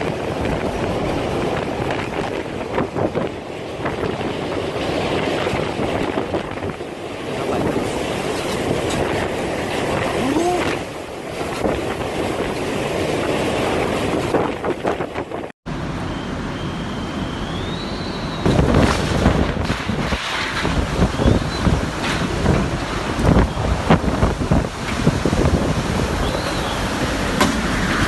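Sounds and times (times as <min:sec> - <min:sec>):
strong wind buffeting microphone: 0:00.0 - 0:16.0, 0:17.0 - 0:28.0
thin high whistle: 0:16.0 - 0:18.5, 0:26.2 - 0:26.8.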